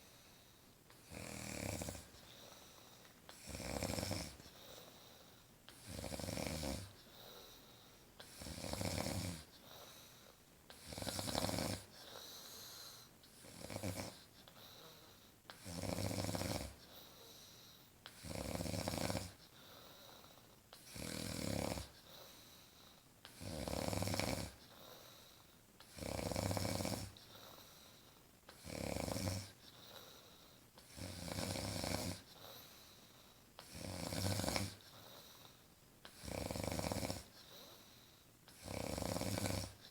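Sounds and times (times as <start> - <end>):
woman snoring: 1.0 - 2.2, 3.3 - 4.9, 5.8 - 7.0, 8.2 - 9.5, 10.8 - 15.0, 15.6 - 16.8, 18.2 - 19.4, 20.9 - 22.0, 23.4 - 24.6, 25.9 - 27.2, 28.5 - 30.2, 30.9 - 32.4, 33.6 - 34.9, 36.1 - 37.4, 38.5 - 39.9.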